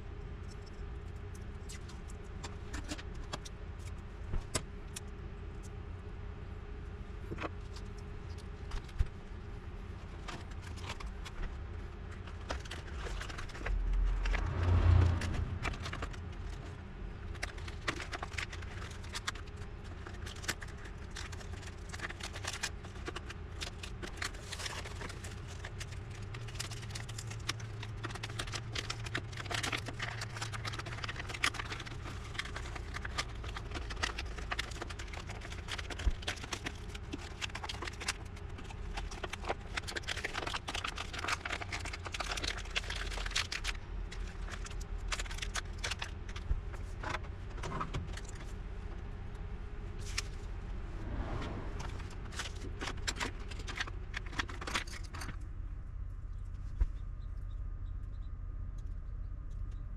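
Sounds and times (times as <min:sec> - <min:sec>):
steady low hum: 0:00.0 - 0:37.2, 0:42.8 - 0:59.9
small parts clicking and rattling: 0:17.3 - 0:48.5, 0:52.8 - 0:55.5.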